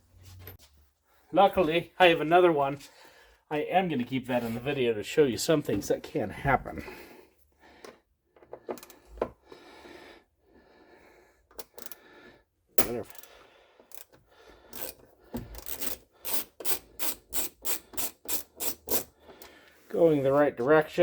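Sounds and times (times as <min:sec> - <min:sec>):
metal tool parts clinking: 0:12.8 - 0:13.3.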